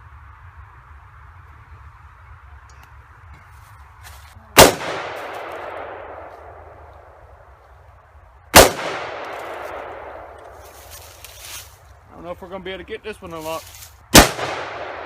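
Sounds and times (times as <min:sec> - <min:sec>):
rifle shots echoing: 0:04.6 - 0:06.8, 0:08.5 - 0:10.5, 0:14.1 - 0:15.0.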